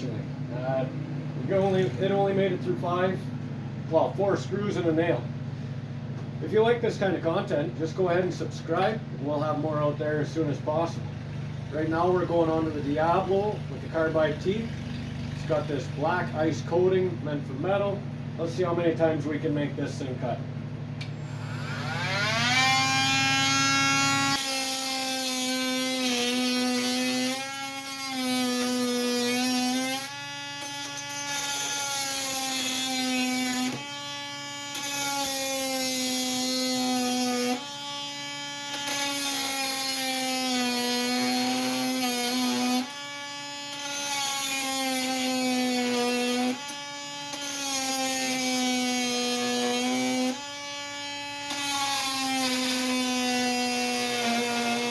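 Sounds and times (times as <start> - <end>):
multi-tool whining: 0.0 - 54.9
blade cutting through metal: 21.1 - 54.9.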